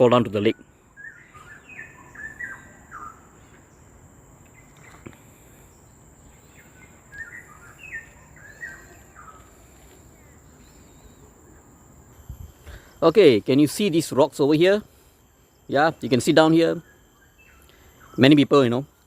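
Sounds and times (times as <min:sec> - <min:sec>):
steady high-pitched hum: 0:00.0 - 0:19.0
bird whistling notes: 0:00.5 - 0:03.5, 0:06.4 - 0:09.5.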